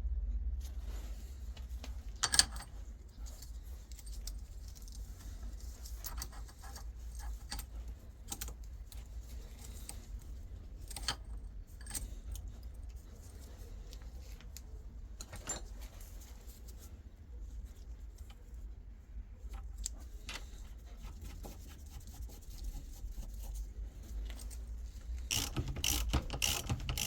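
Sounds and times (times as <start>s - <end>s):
low steady hum: 0.0s - 27.0s
metal parts clicking and clinking: 1.6s - 14.6s, 15.2s - 16.2s, 24.1s - 27.0s.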